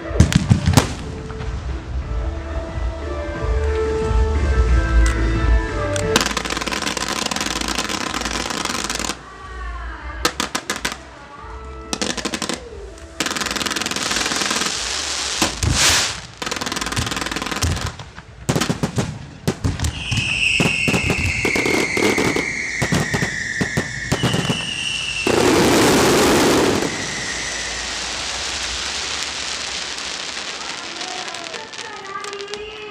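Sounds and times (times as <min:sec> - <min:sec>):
fireworks crackling and banging: 0:00.0 - 0:32.9
falling whistling tones: 0:19.9 - 0:30.6.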